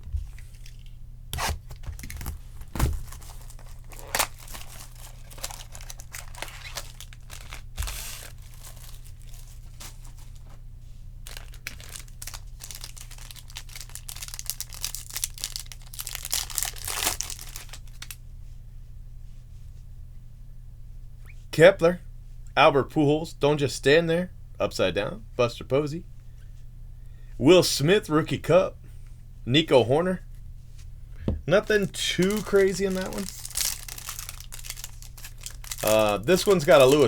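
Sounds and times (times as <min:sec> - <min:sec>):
steady low hum: 0:00.0 - 0:15.4, 0:17.2 - 0:37.0
wrappers tearing and crinkling: 0:01.4 - 0:10.5, 0:11.2 - 0:18.2, 0:31.6 - 0:37.0.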